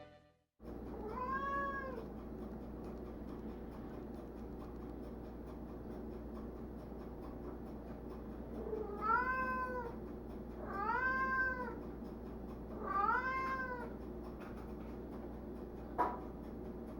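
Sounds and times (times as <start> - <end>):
low steady room hum: 0.0 - 16.9
cat meowing: 1.0 - 2.0, 8.8 - 10.0, 10.6 - 11.8, 12.8 - 14.0.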